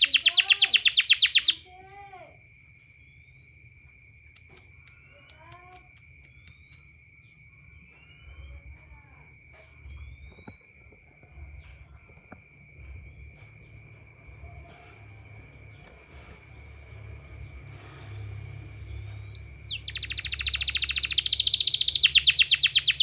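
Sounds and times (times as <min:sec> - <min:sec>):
bird chirps and calls: 0:00.0 - 0:01.7, 0:18.2 - 0:23.0
insect chirping: 0:00.0 - 0:23.0.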